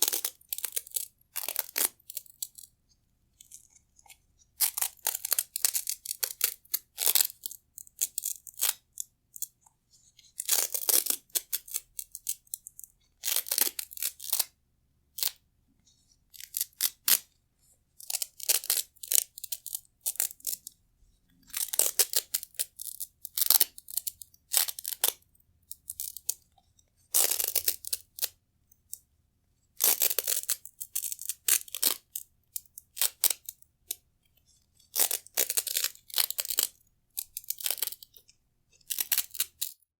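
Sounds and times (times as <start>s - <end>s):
velcro straps ripping: 0.0s - 2.7s, 10.4s - 12.4s, 16.4s - 17.3s, 18.0s - 20.6s, 27.1s - 28.3s, 29.8s - 32.0s, 34.9s - 38.0s, 38.9s - 39.8s.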